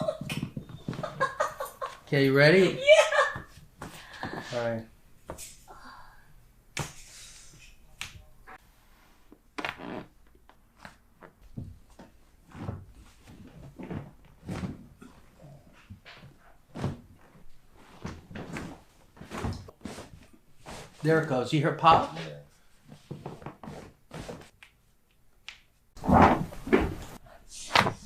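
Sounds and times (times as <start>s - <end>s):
body thudding on table: 26.0s - 27.2s.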